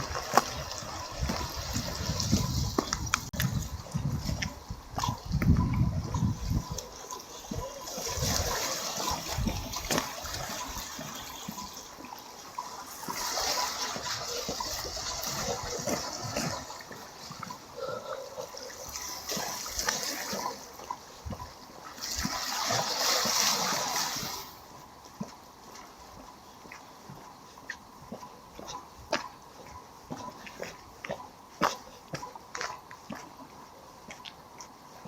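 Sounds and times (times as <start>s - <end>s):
small sea waves washing: 6.9s - 24.7s.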